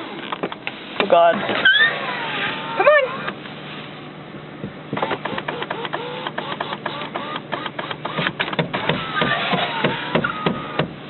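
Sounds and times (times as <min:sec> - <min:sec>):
short squeaks: 0:01.5 - 0:03.4, 0:05.0 - 0:10.8.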